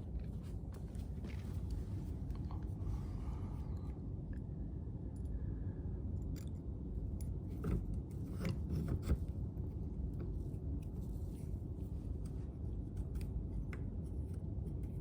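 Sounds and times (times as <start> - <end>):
steady low rumble: 0.0 - 8.3.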